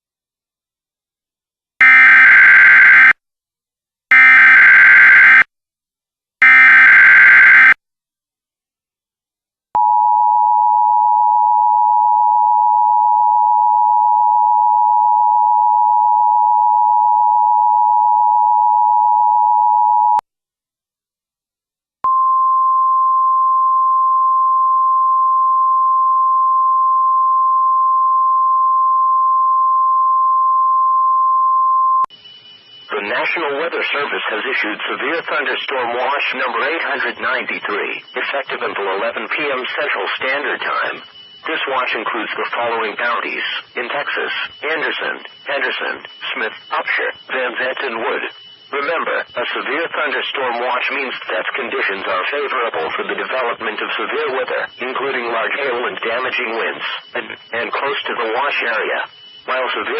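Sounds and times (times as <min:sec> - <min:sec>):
steady weather radio alert tone: 0:01.8 - 0:03.2, 0:04.1 - 0:05.5, 0:06.4 - 0:07.8, 0:32.0 - 0:59.9.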